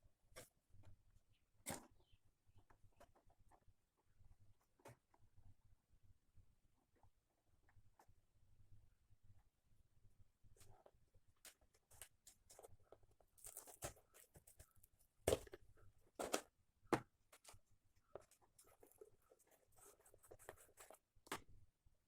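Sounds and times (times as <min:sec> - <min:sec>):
faint handling noises: 0:10.4 - 0:21.6.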